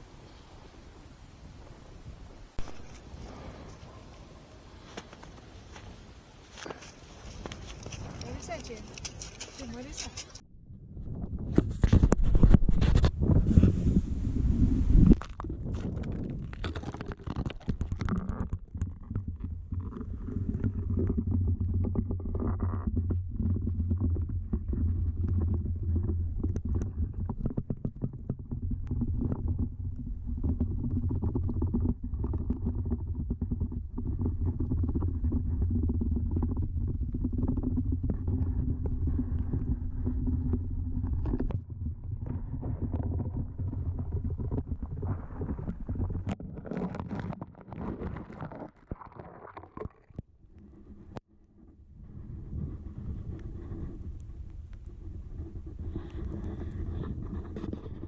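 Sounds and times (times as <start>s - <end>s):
muffled low rumbling: 18.6s - 46.4s.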